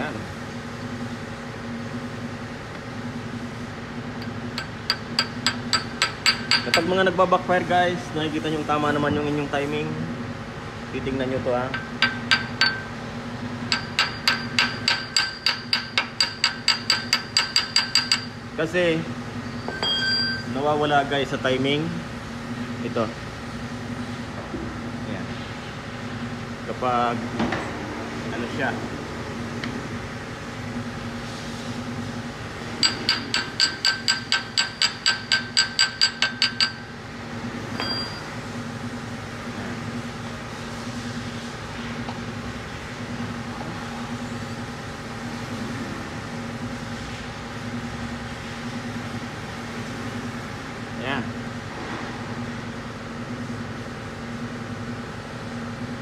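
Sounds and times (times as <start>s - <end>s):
hammer tapping on metal: 4.2s - 7.0s, 11.7s - 12.9s, 13.7s - 18.3s, 32.8s - 36.9s.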